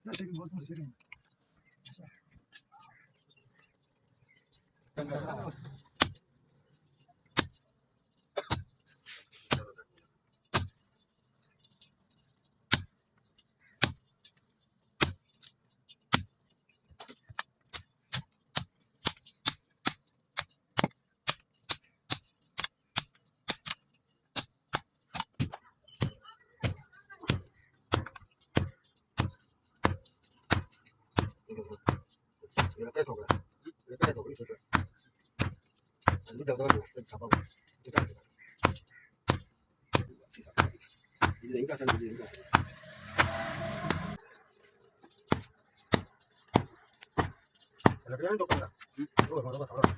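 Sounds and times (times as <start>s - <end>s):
hammer striking metal on anvil: 6.0s - 6.4s, 7.4s - 7.8s, 8.4s - 8.9s, 9.5s - 9.8s, 10.5s - 10.9s, 12.7s - 13.0s, 13.8s - 14.3s, 15.0s - 15.5s, 24.4s - 44.2s, 45.3s - 49.9s.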